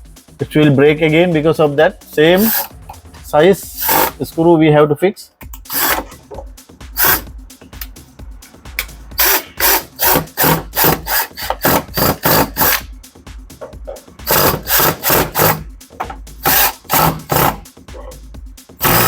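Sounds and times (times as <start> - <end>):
screwdriver driving screws: 2.4 - 2.7, 3.8 - 4.2, 5.6 - 6.0, 7.0 - 7.2, 9.2 - 12.8, 14.3 - 15.6, 16.4 - 17.6.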